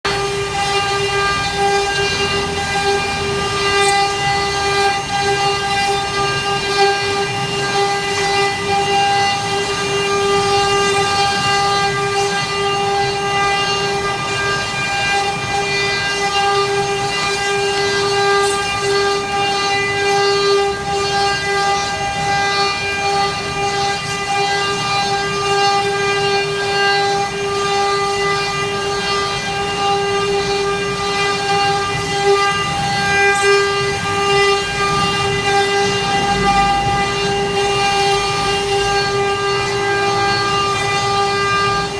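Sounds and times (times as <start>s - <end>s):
router spindle whining: 0.0s - 41.9s.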